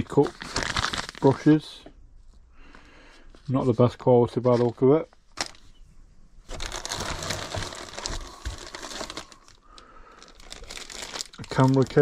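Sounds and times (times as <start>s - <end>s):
packaging crinkling and rustling: 0.0s - 1.6s, 6.4s - 12.0s.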